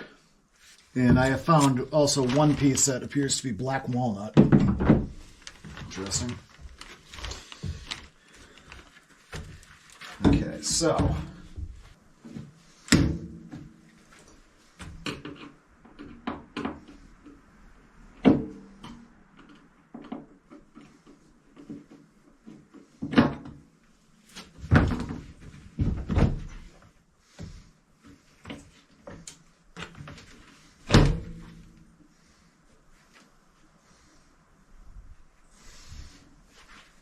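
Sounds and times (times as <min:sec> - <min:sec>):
handling and scraping: 0:00.6 - 0:04.3, 0:05.1 - 0:16.2
wooden knocks and thumps: 0:04.3 - 0:05.8, 0:24.6 - 0:26.7.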